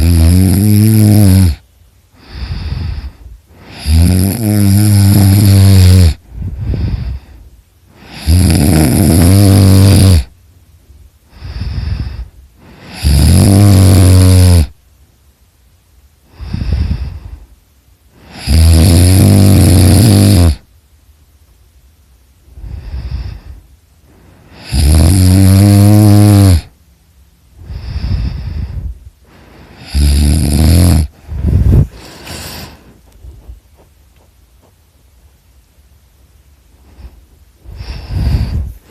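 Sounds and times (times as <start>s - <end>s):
person snoring loudly: 0.0s - 1.6s, 2.2s - 10.4s, 11.3s - 14.8s, 16.3s - 17.4s, 18.2s - 20.7s, 22.6s - 23.6s, 24.5s - 26.8s, 27.6s - 29.0s, 29.6s - 32.9s, 36.9s - 38.9s
quiet breath: 1.5s - 4.0s, 6.1s - 8.3s, 11.1s - 13.2s, 16.1s - 18.5s, 22.4s - 24.8s, 26.6s - 30.1s, 31.0s - 33.6s, 36.4s - 38.9s.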